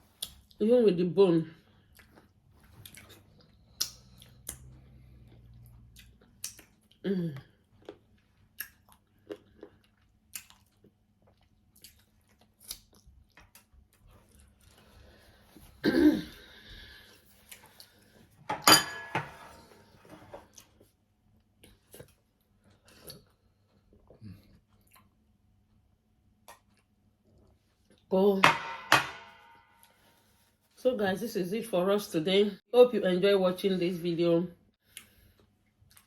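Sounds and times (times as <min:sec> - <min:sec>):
people chewing: 0:01.8 - 0:15.7, 0:16.6 - 0:18.3, 0:20.4 - 0:28.0, 0:34.8 - 0:36.0.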